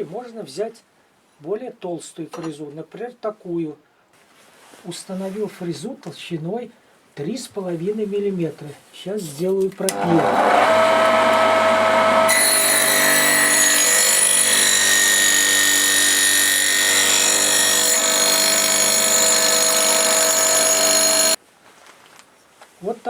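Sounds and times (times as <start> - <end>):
saw blade cutting wood: 9.9 - 21.4.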